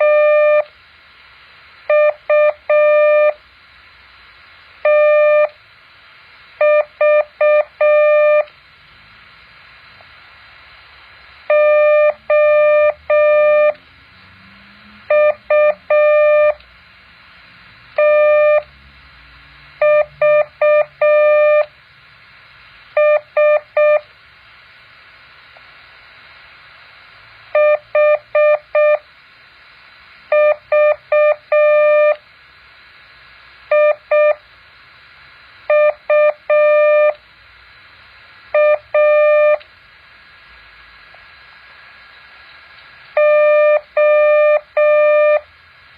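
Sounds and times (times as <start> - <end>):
morse code beeps: 0.0 - 0.6, 1.9 - 3.4, 4.8 - 5.5, 6.6 - 8.5, 11.5 - 13.8, 15.1 - 16.6, 18.0 - 18.7, 19.8 - 21.7, 23.0 - 24.0, 27.6 - 29.0, 30.3 - 32.2, 33.7 - 34.4, 35.7 - 37.2, 38.6 - 39.6, 43.2 - 45.4.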